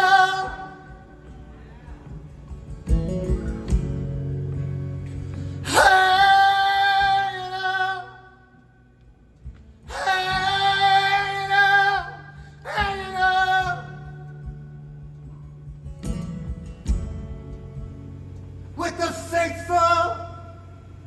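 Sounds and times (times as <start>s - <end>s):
person singing with vibrato: 0.0s - 1.7s, 5.6s - 8.6s, 9.9s - 14.5s, 18.8s - 20.8s
soft low accompaniment: 0.0s - 5.8s.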